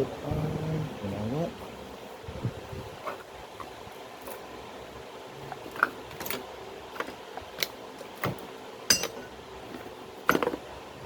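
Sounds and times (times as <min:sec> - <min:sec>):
metal hand tools clinking: 0:08.9 - 0:09.3.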